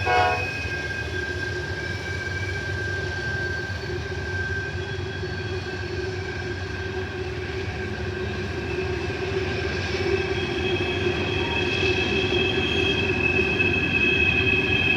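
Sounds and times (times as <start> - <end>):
low train rumble: 0.0 - 14.9
train wheels squealing on rail: 0.0 - 14.9.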